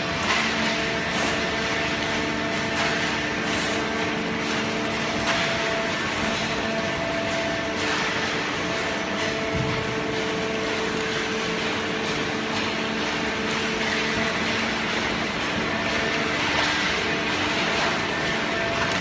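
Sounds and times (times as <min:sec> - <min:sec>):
baler machine humming: 0:00.0 - 0:19.0.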